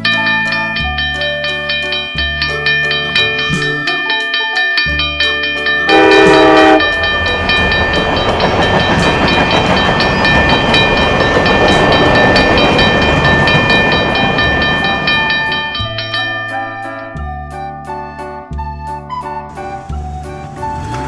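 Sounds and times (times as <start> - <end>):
train rolling: 0.0 - 17.3
background music: 0.0 - 21.0
train whistle: 5.9 - 6.9.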